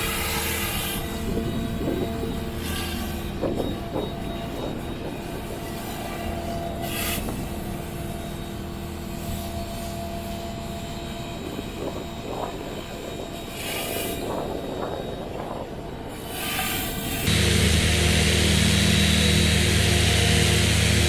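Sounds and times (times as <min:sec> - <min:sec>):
pressure washer motor and pump hum: 0:00.0 - 0:14.6, 0:16.3 - 0:21.0
water spray hissing on concrete: 0:16.2 - 0:17.3.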